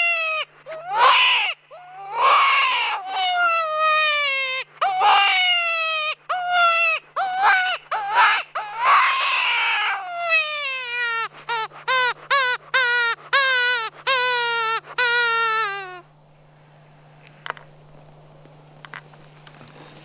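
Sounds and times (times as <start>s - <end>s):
predator call distress cry: 0.0s - 16.1s.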